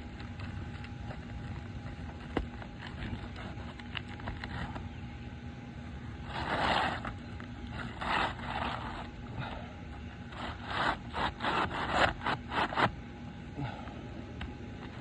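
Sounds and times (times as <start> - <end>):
shingles scraping together: 6.2 - 9.2, 10.2 - 13.0.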